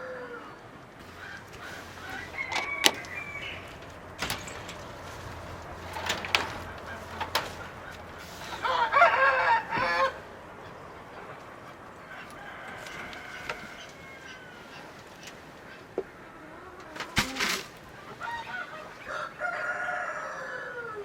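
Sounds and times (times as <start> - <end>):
rooster crowing: 0.0 - 10.9, 12.0 - 15.0, 18.2 - 21.0
faint bird calls: 0.0 - 21.0.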